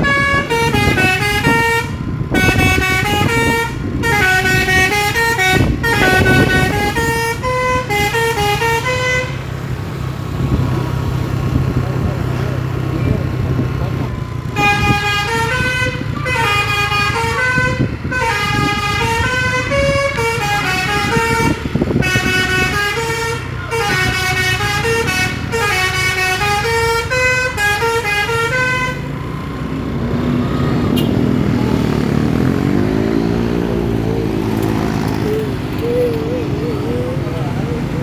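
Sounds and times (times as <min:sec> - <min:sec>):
bus musical horn tune: 0:00.0 - 0:09.6, 0:14.5 - 0:29.2, 0:30.9 - 0:31.3
bus engine running: 0:00.0 - 0:38.0.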